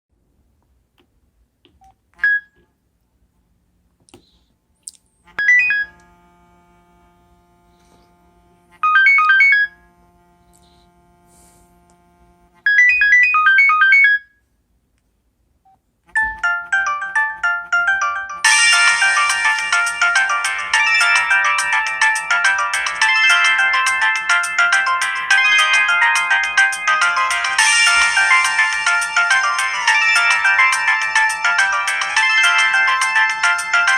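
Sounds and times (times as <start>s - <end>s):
melodic phone ringtone: 5.3s - 12.1s, 12.7s - 14.4s, 16.2s - 33.9s
phone ringtone chimes: 8.8s - 9.8s, 12.7s - 14.3s, 16.2s - 33.9s.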